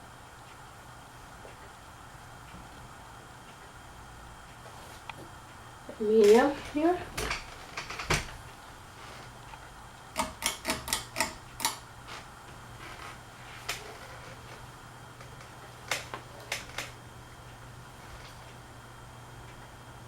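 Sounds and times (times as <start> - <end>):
ceiling fan motor humming: 0.0 - 20.0
sharp clicks: 10.2 - 11.8.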